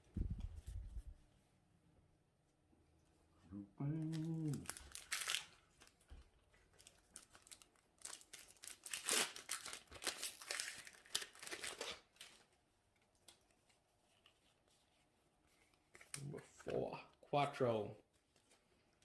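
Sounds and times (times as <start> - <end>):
foil wrapper tearing and crinkling: 4.2 - 6.0, 6.6 - 12.5.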